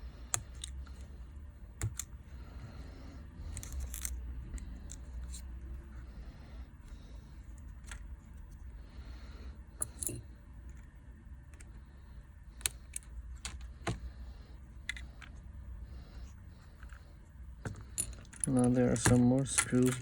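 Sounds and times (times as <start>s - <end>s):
low steady hum: 0.0s - 20.0s
small tools tapping phone parts: 0.3s - 0.8s, 1.8s - 2.2s, 3.5s - 5.5s, 9.8s - 10.9s, 17.6s - 20.0s.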